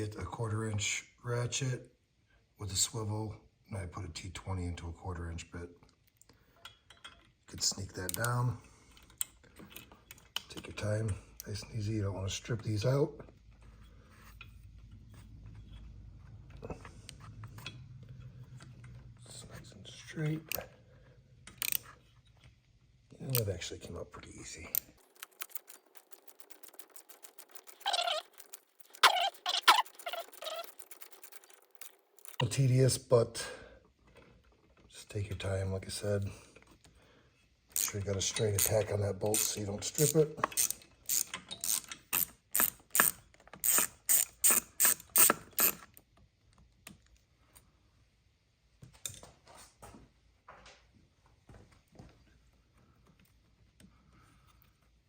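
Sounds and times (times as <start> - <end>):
ratchet clicking rapidly: 24.8 - 32.4, 37.8 - 45.8.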